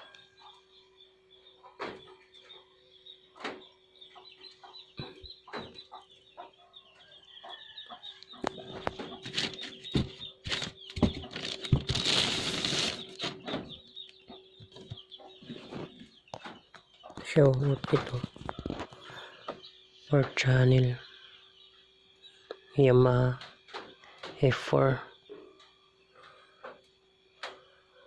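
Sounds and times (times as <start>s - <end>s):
knocks on cardboard and plastic: 8.8s - 12.1s
packaging rustling: 9.2s - 13.4s.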